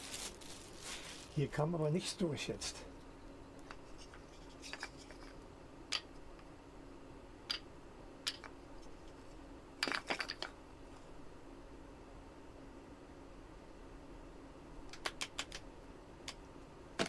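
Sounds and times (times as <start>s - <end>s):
faint steady hum: 0.0s - 17.0s
hard objects clicking: 7.5s - 8.6s, 14.9s - 15.6s.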